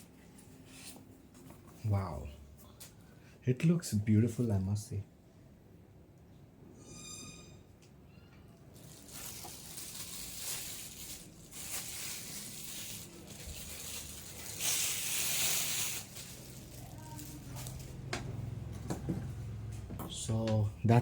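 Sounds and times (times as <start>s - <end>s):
plastic packaging rustling: 8.7s - 18.1s.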